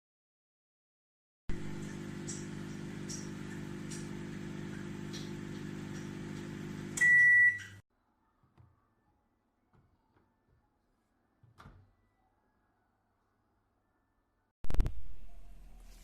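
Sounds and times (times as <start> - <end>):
high-pitched microwave beep: 1.5 - 7.8
microwave oven humming: 1.5 - 7.8.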